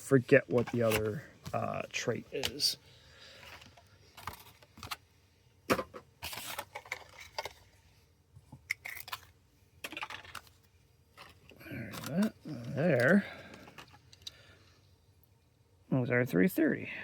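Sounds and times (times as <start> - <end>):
packaging rustling and scraping: 0.4 - 5.1, 5.8 - 7.9, 8.7 - 14.3.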